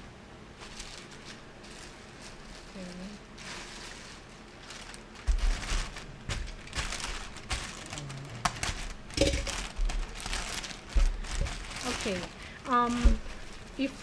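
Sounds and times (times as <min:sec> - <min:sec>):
plastic packaging crinkling: 0:00.6 - 0:14.0
knocks and thumps of objects: 0:05.2 - 0:11.8, 0:12.9 - 0:13.5.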